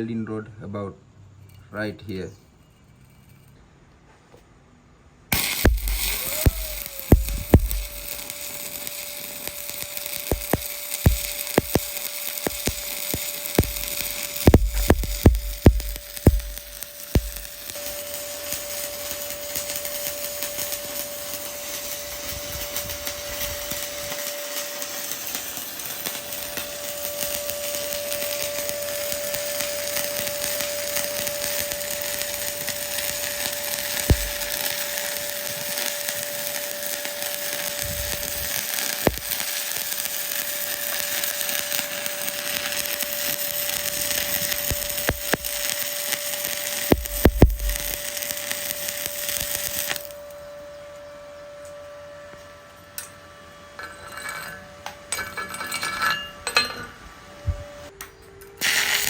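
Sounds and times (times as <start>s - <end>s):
welding spatter pops: 5.3s - 50.3s
welding arc crackling and hissing: 5.3s - 50.5s, 58.6s - 59.0s
steady whine: 5.3s - 54.2s.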